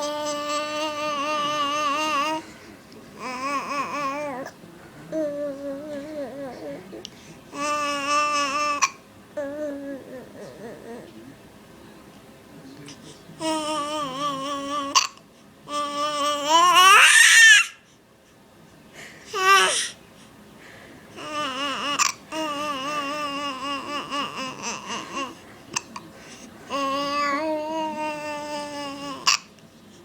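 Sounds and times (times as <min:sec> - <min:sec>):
baby babbling: 0:00.0 - 0:02.4, 0:03.2 - 0:04.5, 0:05.1 - 0:06.9, 0:07.5 - 0:11.1, 0:13.4 - 0:17.8, 0:19.4 - 0:19.9, 0:21.2 - 0:25.4, 0:26.7 - 0:29.5.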